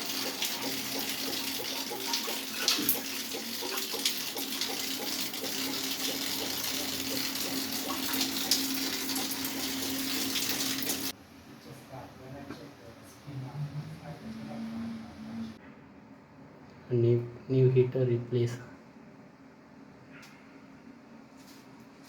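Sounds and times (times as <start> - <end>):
water running from a tap: 0.0 - 11.2.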